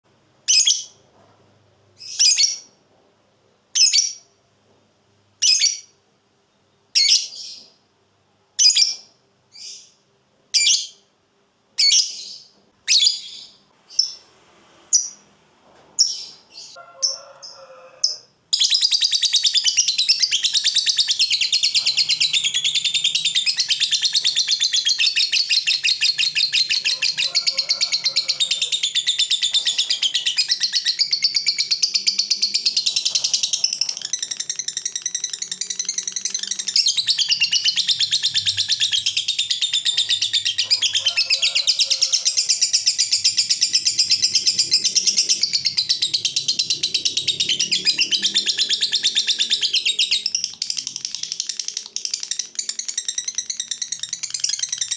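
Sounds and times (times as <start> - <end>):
lovebird chirps: 0.5 - 1.0, 2.0 - 2.7, 3.8 - 4.2, 5.4 - 5.9, 10.6 - 11.1, 11.8 - 14.3, 16.0 - 54.9
lovebird rapid chattering trill: 28.3 - 54.9.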